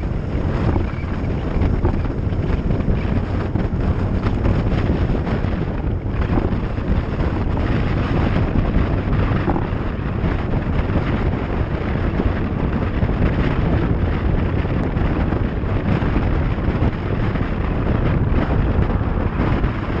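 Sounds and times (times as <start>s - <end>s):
constant low rumble: 0.0s - 20.0s
vehicle on wet road: 0.0s - 20.0s
wind on microphone: 0.0s - 20.0s.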